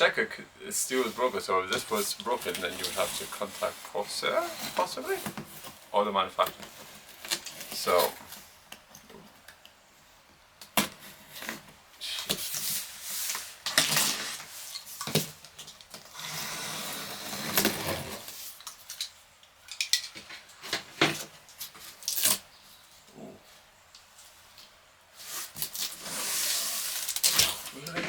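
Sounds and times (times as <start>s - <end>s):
cardboard scraping rub: 1.0s - 5.8s, 16.1s - 18.4s, 25.2s - 27.2s.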